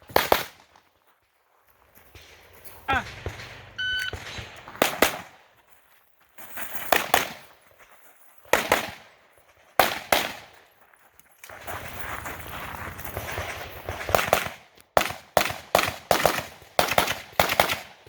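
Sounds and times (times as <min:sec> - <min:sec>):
gunshots in quick pairs: 0:00.0 - 0:00.6, 0:02.9 - 0:05.4, 0:06.9 - 0:07.5, 0:08.5 - 0:09.1, 0:09.8 - 0:10.5, 0:13.2 - 0:18.0.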